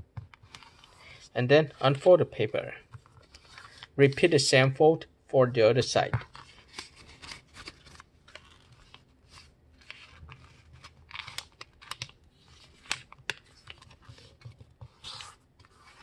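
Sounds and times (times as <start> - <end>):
paper crackling as creased: 0.4 - 2.0, 3.0 - 4.2, 6.3 - 16.0
paper rustling: 6.1 - 16.0.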